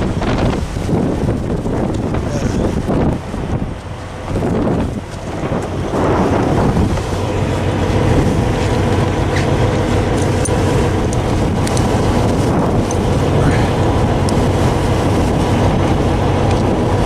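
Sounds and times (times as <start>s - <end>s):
diesel truck engine running: 0.0s - 17.0s
wind buffeting microphone: 0.0s - 17.0s.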